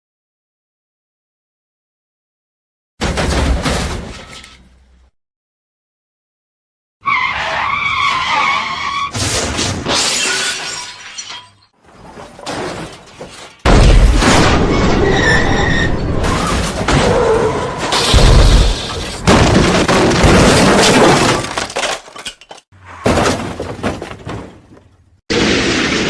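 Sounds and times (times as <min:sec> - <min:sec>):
tyres skidding with squeal: 0:07.0 - 0:09.4, 0:14.6 - 0:18.2
car crash with breaking glass: 0:08.1 - 0:22.3, 0:22.9 - 0:24.7
crash debris falling: 0:09.2 - 0:15.1, 0:17.8 - 0:26.0.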